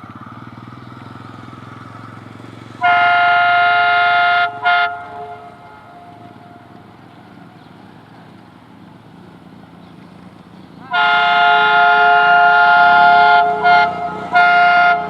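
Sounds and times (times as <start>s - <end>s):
diesel engine running: 0.0s - 15.0s
locomotive horn blasts: 2.8s - 7.0s, 10.8s - 15.0s.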